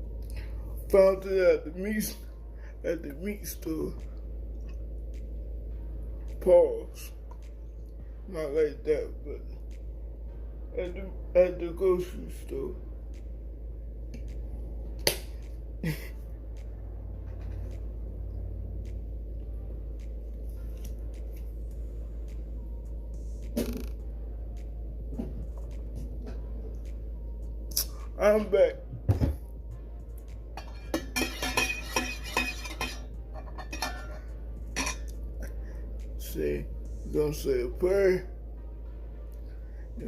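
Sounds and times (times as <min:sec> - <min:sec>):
low hum: 0:00.0 - 0:40.0
utensil clinking against dishes: 0:30.6 - 0:35.2.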